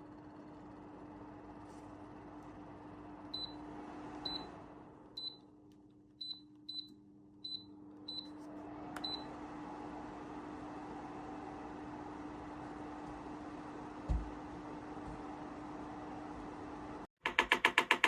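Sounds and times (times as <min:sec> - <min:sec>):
fan motor hum and airflow: 0:00.0 - 0:05.4, 0:07.4 - 0:17.1
fan control beeps: 0:03.3 - 0:03.6, 0:04.2 - 0:04.5, 0:05.2 - 0:05.5, 0:06.2 - 0:08.4, 0:09.0 - 0:09.4.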